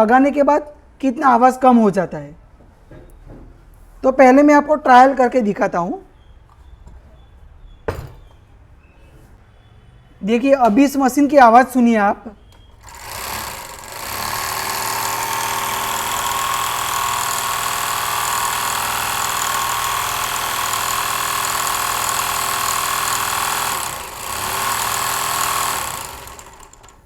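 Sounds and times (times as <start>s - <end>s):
overlock machine running: 12.8s - 27.0s.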